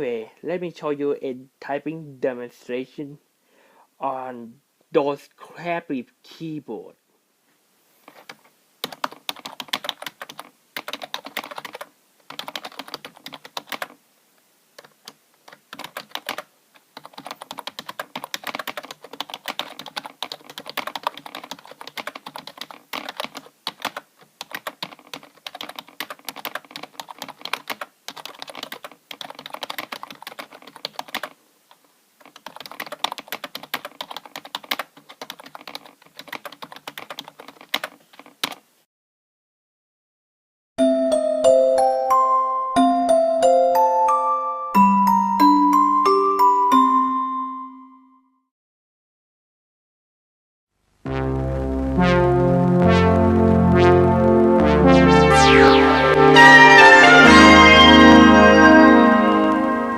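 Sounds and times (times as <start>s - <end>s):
typing on computer keyboard: 8.1s - 14.0s, 14.8s - 31.4s, 32.2s - 38.6s.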